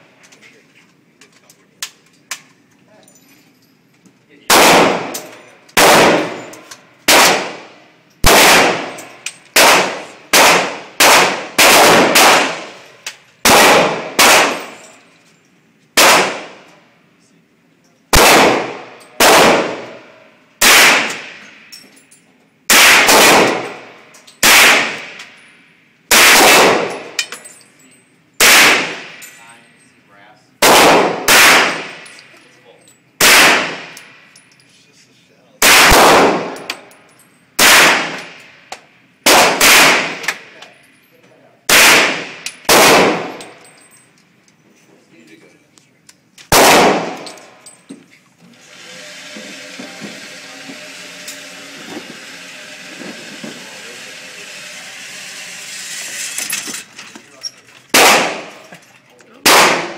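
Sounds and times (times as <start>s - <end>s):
rifle gunshots echoing: 4.5s - 14.8s, 16.0s - 16.7s, 18.1s - 21.5s, 22.7s - 25.3s, 26.1s - 27.2s, 28.4s - 29.2s, 30.6s - 32.2s, 33.2s - 34.3s, 35.6s - 36.9s, 37.6s - 38.6s, 39.2s - 40.6s, 41.7s - 43.6s, 46.5s - 47.6s, 57.9s - 58.7s, 59.4s - 59.9s.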